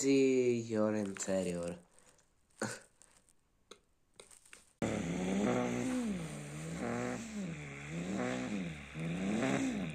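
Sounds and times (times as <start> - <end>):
car engine revving: 4.8 - 9.9.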